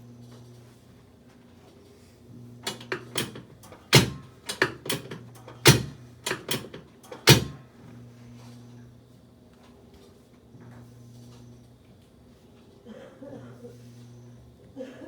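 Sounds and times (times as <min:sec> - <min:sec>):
sharp clicks and knocks: 0:02.6 - 0:07.6.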